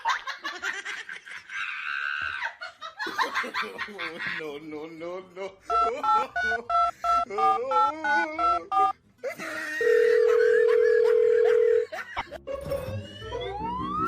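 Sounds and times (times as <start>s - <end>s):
person speaking: 4.0s - 10.4s.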